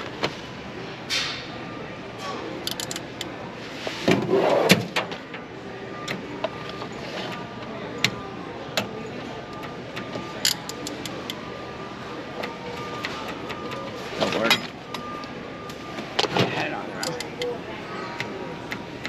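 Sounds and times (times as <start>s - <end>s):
store background hum: 0.0s - 19.0s
sharp handling clicks: 2.6s - 3.4s.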